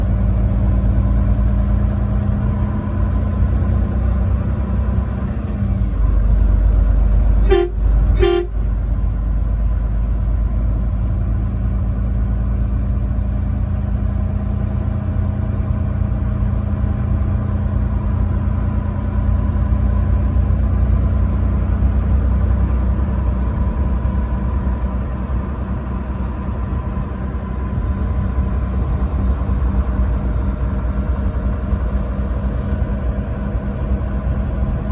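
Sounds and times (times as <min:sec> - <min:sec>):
truck engine running: 0:00.0 - 0:34.9
truck horn blasts: 0:07.4 - 0:08.8.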